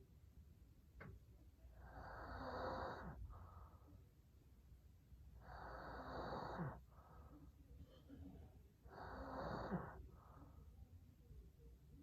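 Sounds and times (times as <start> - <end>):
man snoring: 1.9 - 3.2, 5.5 - 6.8, 8.9 - 10.0.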